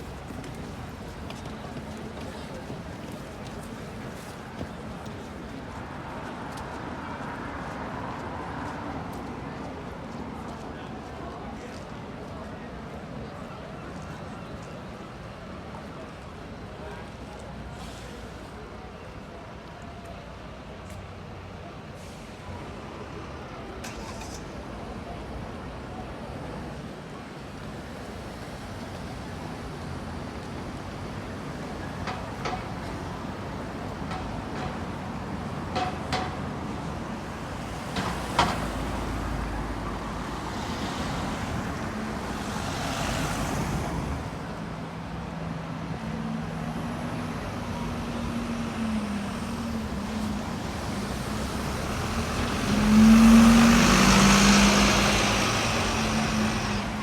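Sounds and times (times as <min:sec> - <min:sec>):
hiss of traffic: 0:00.0 - 0:57.0
vehicle engine hum passing: 0:36.9 - 0:57.0.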